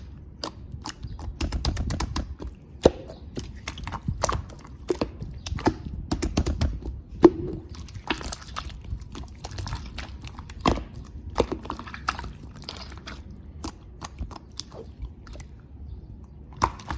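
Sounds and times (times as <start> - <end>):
wind buffeting microphone: 0.0 - 16.9
sharp clicks and taps: 0.4 - 3.5.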